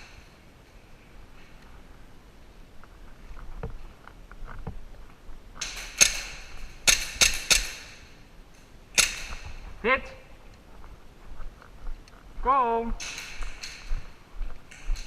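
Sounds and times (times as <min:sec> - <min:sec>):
airsoft gun shots: 0:05.6 - 0:08.0, 0:09.0 - 0:09.4.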